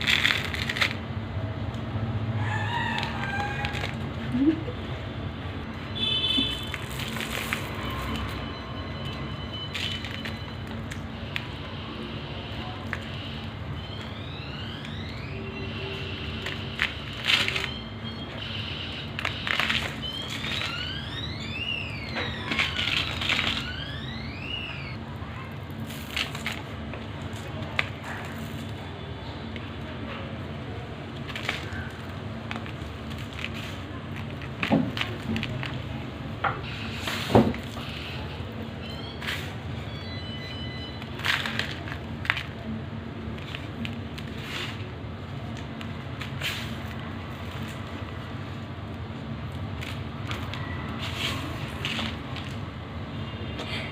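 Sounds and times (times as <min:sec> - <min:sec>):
crispy food crunching: 0:00.0 - 0:04.8, 0:05.6 - 0:39.6, 0:40.8 - 0:52.8
siren wailing: 0:02.4 - 0:04.0, 0:07.6 - 0:25.2.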